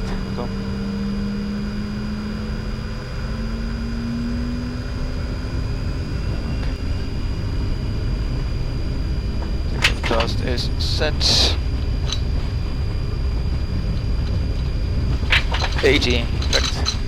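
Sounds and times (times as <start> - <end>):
high engine whine: 0.0 - 17.0
jet engines spooling up: 0.0 - 17.0
jet takeoff roll rumble: 0.0 - 17.0.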